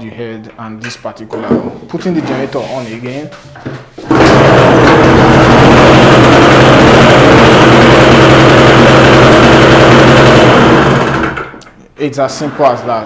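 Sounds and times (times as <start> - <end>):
small generator engine running: 4.1 - 11.6.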